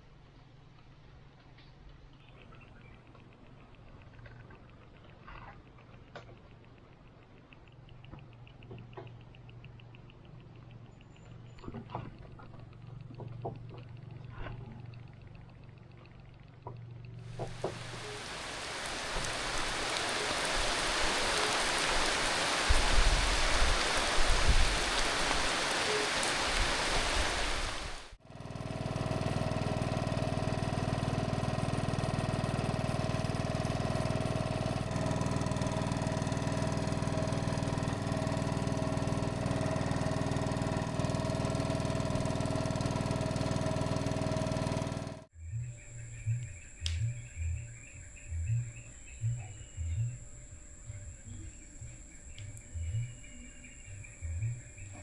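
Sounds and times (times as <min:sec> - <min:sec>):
small boat engine humming: 0:00.0 - 0:55.0
heavy rain pouring: 0:17.3 - 0:28.2.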